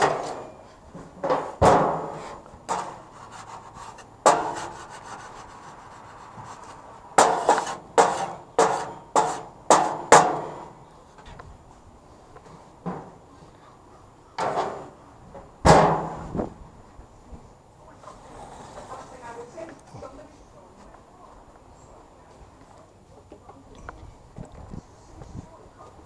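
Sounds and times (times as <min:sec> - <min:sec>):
grill scraping strokes: 0:01.3 - 0:10.7.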